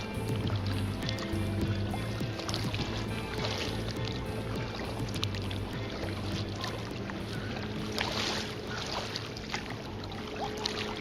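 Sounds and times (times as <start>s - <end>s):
motorboat engine humming: 0.0s - 11.0s
water splashing and lapping: 0.0s - 11.0s.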